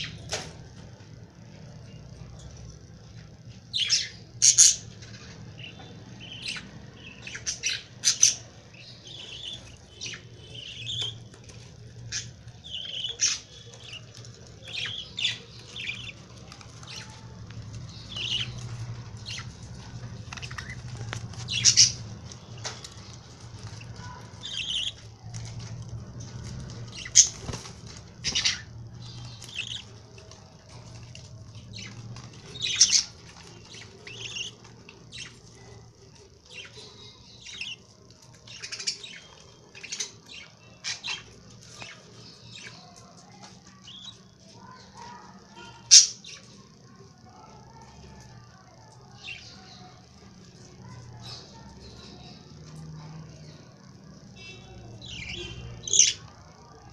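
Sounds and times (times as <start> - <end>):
lovebirds chirping and squeaking: 1.8 - 46.7, 49.1 - 56.8
wings flapping: 25.2 - 28.7.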